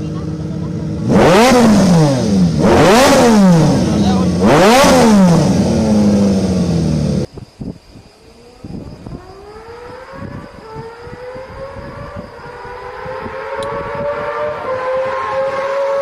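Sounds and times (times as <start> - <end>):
distant motorcycle engine revving high: 0.0 - 7.3, 8.3 - 16.0.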